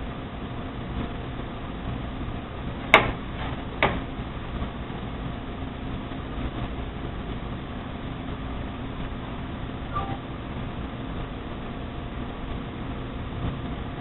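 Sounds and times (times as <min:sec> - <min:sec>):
low mechanical hum: 0:00.0 - 0:14.0.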